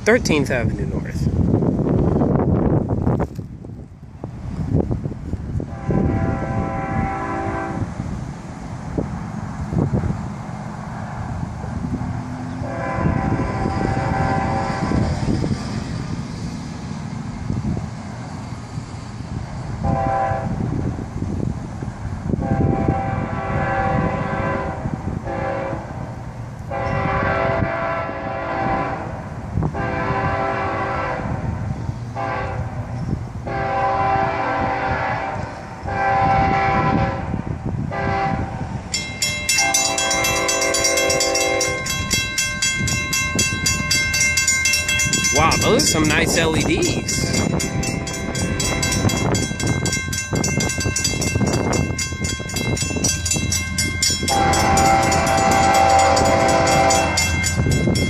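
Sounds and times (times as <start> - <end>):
low train rumble: 0.0 - 58.0
train horn blasts: 5.6 - 8.0, 12.5 - 15.4, 19.8 - 20.7, 22.4 - 26.0, 26.7 - 58.0
bell ringing rapidly: 39.0 - 58.0.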